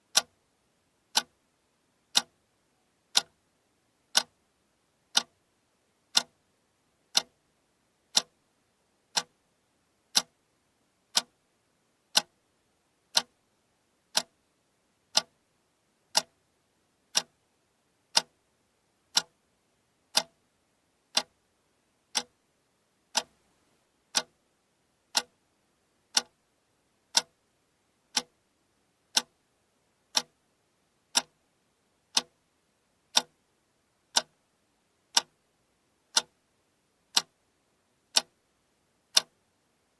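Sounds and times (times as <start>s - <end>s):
alarm clock ticking: 5.1s - 5.3s, 21.1s - 21.3s.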